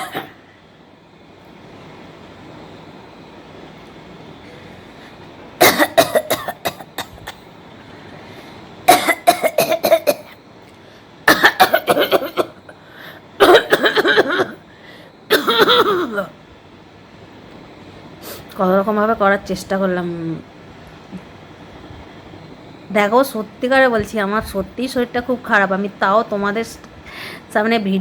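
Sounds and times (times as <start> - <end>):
person coughing: 0.0 - 0.4, 5.6 - 7.4, 8.9 - 10.4, 11.3 - 12.6, 13.4 - 14.6, 15.3 - 16.4.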